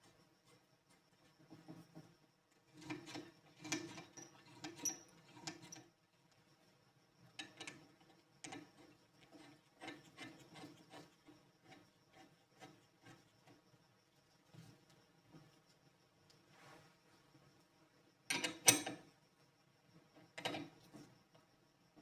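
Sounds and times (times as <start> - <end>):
rubbing and scraping strokes: 9.3 - 13.4.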